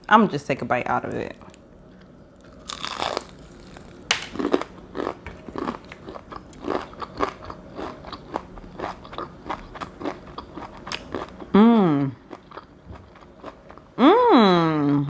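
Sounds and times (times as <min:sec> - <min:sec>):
person chewing: 0:02.0 - 0:11.5, 0:12.2 - 0:13.9
fried chicken crust crunching: 0:02.4 - 0:11.3.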